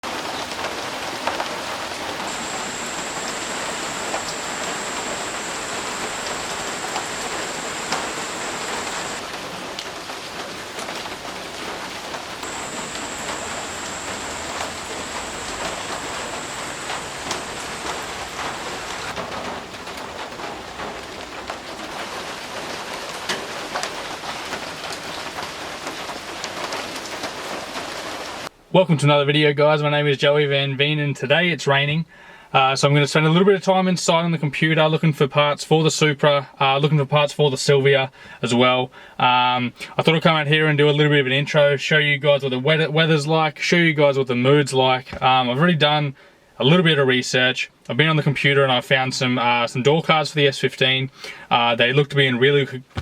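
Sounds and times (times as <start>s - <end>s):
raindrops clicking on surfaces: 0.0s - 28.5s
steady rain: 0.0s - 28.6s
high-pitched whine: 1.3s - 9.4s, 12.3s - 22.1s.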